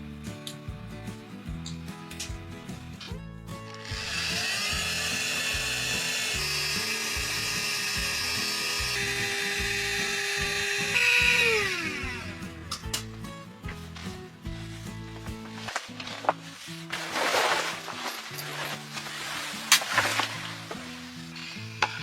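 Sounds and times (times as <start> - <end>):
background music: 0.0 - 22.0
small motor whining: 3.8 - 12.6.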